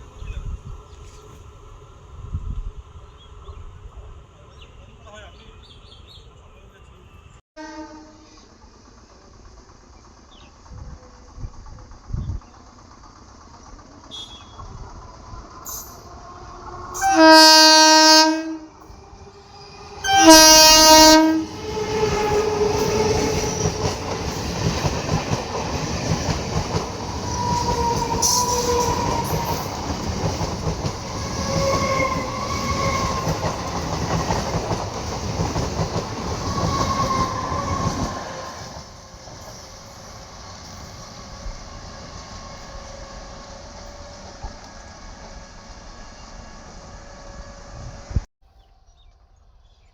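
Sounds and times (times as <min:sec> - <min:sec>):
train horn blasts: 0:07.6 - 0:08.5, 0:14.1 - 0:14.6, 0:16.9 - 0:18.9, 0:19.6 - 0:23.8, 0:27.3 - 0:29.7, 0:31.2 - 0:33.4.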